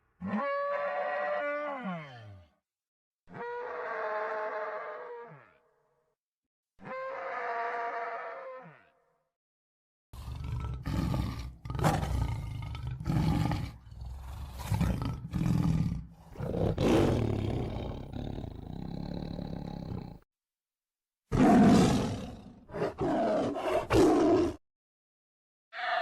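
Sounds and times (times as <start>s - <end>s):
loud animal-like roars: 10.2s - 20.2s, 21.3s - 24.6s.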